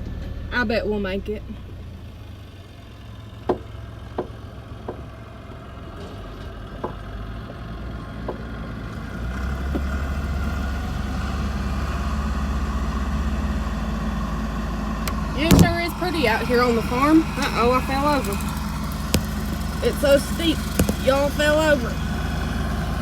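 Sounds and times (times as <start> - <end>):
truck engine running: 0.0 - 23.0
sharp knocks: 15.4 - 16.2, 17.3 - 21.8.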